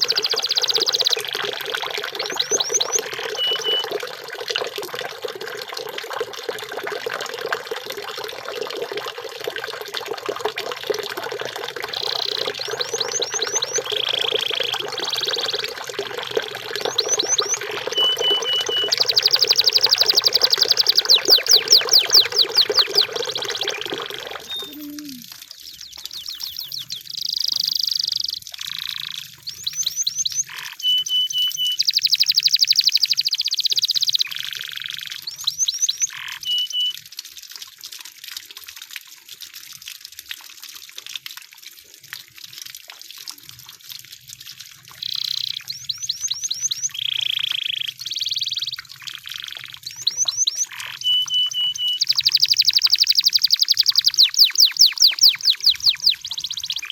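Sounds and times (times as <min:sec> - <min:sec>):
canary singing: 0:00.0 - 0:01.4, 0:02.2 - 0:03.9, 0:11.9 - 0:15.8, 0:16.8 - 0:25.2, 0:25.8 - 0:36.9, 0:45.0 - 0:56.9
rushing water-like noise: 0:00.0 - 0:05.3, 0:10.9 - 0:27.0, 0:49.0 - 0:56.9.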